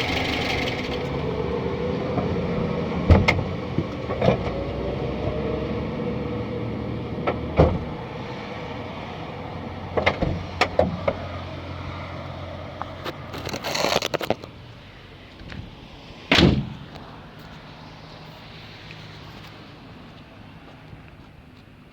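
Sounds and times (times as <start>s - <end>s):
car engine idling: 0.0s - 4.1s
rustling: 12.9s - 14.5s.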